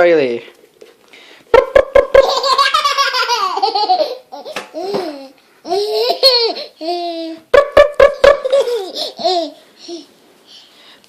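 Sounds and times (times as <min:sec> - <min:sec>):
baby laughing: 0:01.6 - 0:10.1.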